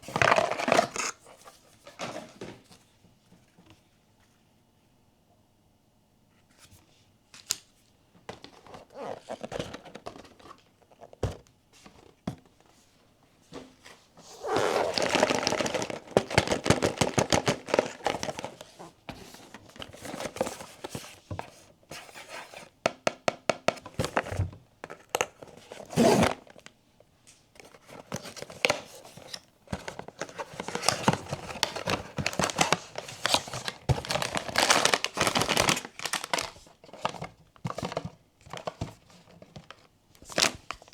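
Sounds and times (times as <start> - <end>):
foil and plastic crinkling: 14.2 - 21.0, 27.6 - 40.9.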